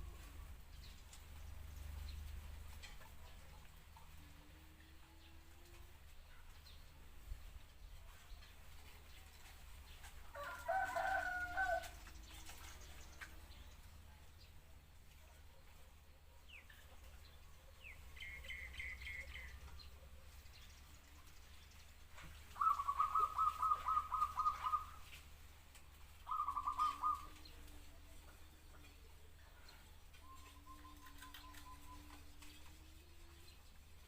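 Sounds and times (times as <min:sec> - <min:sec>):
dove cooing rapid staccato: 0:22.6 - 0:25.0, 0:26.2 - 0:27.3.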